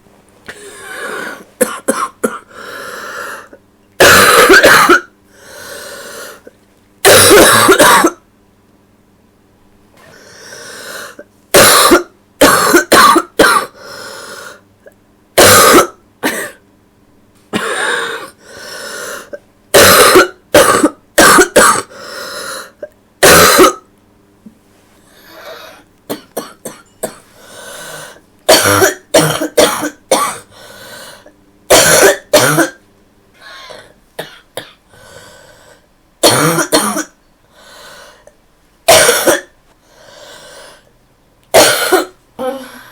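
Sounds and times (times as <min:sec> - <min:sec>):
girl coughing: 0:00.5 - 0:02.5, 0:04.0 - 0:05.1, 0:07.0 - 0:08.2, 0:11.5 - 0:13.8, 0:15.4 - 0:16.6, 0:17.5 - 0:18.4, 0:19.3 - 0:21.9, 0:23.2 - 0:23.8, 0:25.4 - 0:27.3, 0:28.5 - 0:30.5, 0:31.7 - 0:32.8, 0:36.2 - 0:37.2, 0:38.9 - 0:39.5, 0:41.6 - 0:42.9
quiet breaths: 0:27.2 - 0:28.3, 0:30.5 - 0:31.4, 0:34.9 - 0:35.9, 0:37.4 - 0:38.4, 0:39.7 - 0:40.9.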